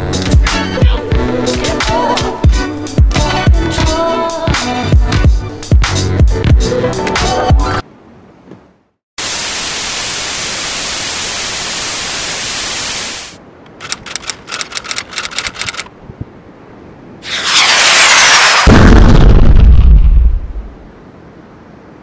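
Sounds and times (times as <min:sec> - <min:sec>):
burst of white-noise static: 0:09.2 - 0:13.4, 0:17.2 - 0:20.8
rapid crackling clicks: 0:13.7 - 0:15.9
heavy low boom: 0:18.7 - 0:20.8.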